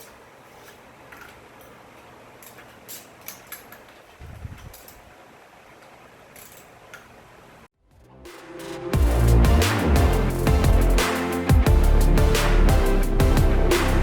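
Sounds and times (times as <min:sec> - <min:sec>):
hand tools clicking on engine bolts: 0:02.4 - 0:04.0.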